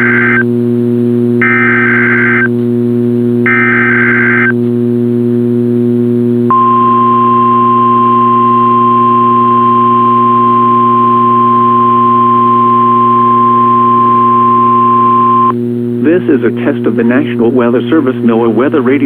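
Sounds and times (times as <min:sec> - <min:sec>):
low electrical hum: 0:00.0 - 0:19.0
steady warning alarm tone: 0:01.4 - 0:02.5, 0:03.5 - 0:04.6, 0:06.5 - 0:15.6.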